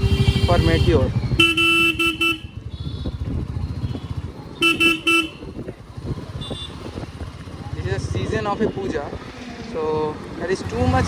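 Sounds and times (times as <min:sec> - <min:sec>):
vehicle horn beeping: 0:00.0 - 0:05.6, 0:06.3 - 0:07.0
motorcycle engine running: 0:00.0 - 0:11.0
road noise: 0:00.0 - 0:11.0.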